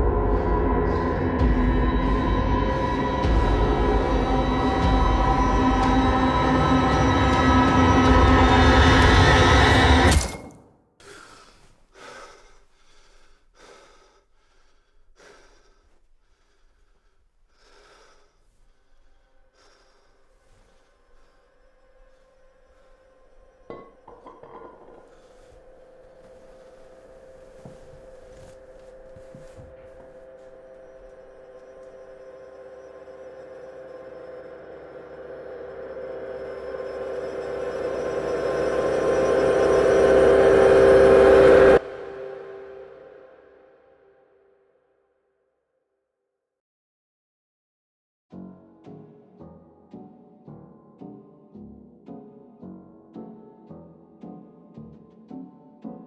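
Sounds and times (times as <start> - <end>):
man breathing heavily: 0.0 - 9.2, 11.0 - 32.3
dark droning chord: 0.0 - 10.2, 18.9 - 44.5.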